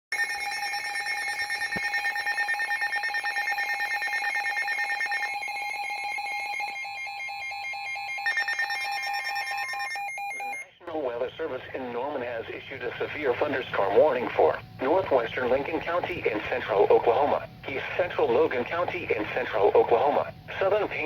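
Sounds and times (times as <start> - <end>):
pulsing electronic alarm tone: 0.1 - 10.8.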